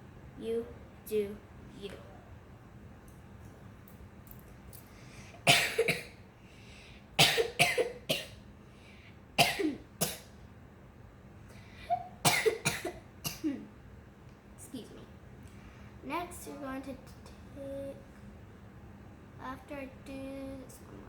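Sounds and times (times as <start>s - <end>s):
person coughing: 5.4s - 6.2s, 7.2s - 8.4s, 9.4s - 10.3s, 11.9s - 13.7s.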